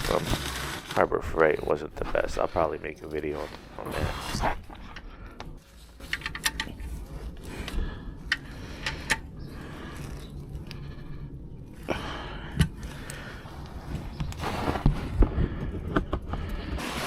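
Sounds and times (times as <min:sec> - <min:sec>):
low steady rumble: 0:00.0 - 0:17.0
objects clicking and knocking: 0:06.0 - 0:06.9.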